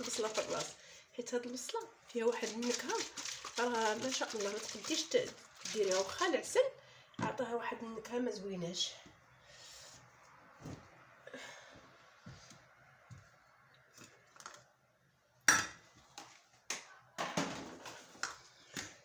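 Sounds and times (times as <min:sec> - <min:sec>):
containers knocking and clinking: 0:00.0 - 0:00.7, 0:02.2 - 0:06.4
rustling: 0:02.2 - 0:06.3.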